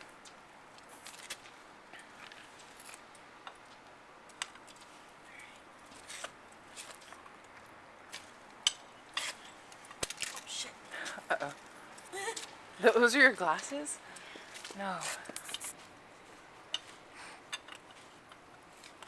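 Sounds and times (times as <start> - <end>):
background hiss: 0.0 - 19.0.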